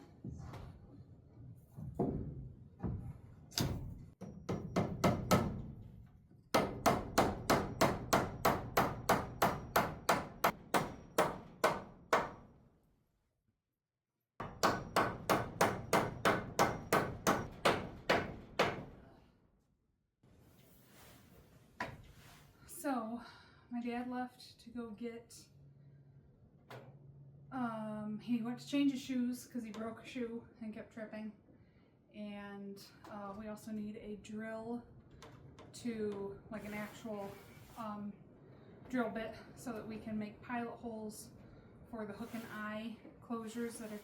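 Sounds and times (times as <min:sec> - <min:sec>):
hammer driving nails into wood: 0:03.6 - 0:05.7, 0:06.5 - 0:12.4, 0:14.4 - 0:19.0.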